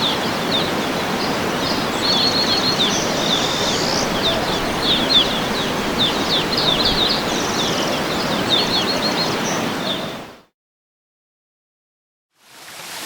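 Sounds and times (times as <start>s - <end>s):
small birds chirping: 0.0s - 10.3s
waterfall rushing: 0.0s - 10.4s.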